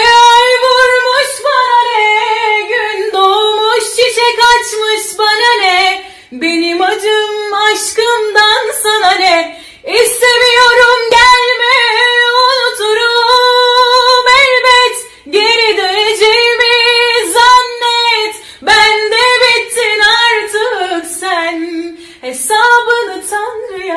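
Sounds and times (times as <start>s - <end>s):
woman singing unaccompanied: 0.0s - 23.9s
woman breathing: 6.0s - 6.4s, 9.5s - 9.9s, 18.4s - 18.7s, 21.9s - 22.2s.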